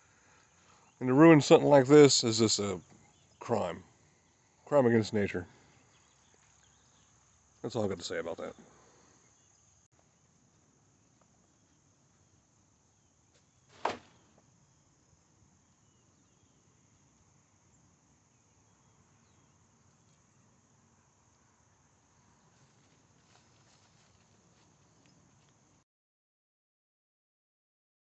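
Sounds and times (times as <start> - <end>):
sharp knock: 13.7 - 14.2.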